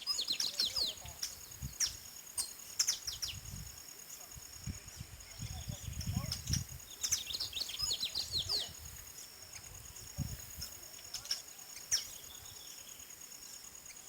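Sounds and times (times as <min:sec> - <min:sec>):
birds chirping: 0:00.0 - 0:14.0
high-pitched insect trill: 0:00.0 - 0:14.0.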